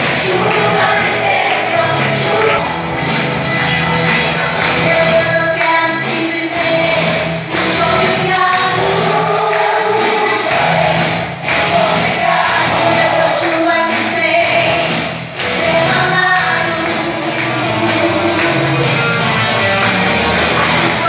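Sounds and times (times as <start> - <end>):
voices singing with band: 0.0 - 21.0.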